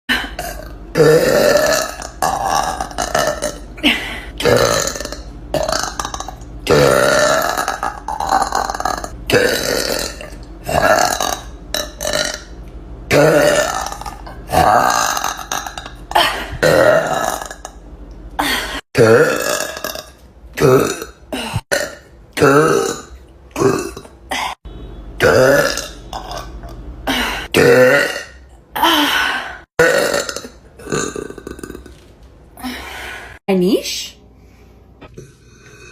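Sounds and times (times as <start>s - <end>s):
woman burping loudly: 0.1s - 12.5s, 13.1s - 17.8s, 18.4s - 24.6s, 25.2s - 32.0s.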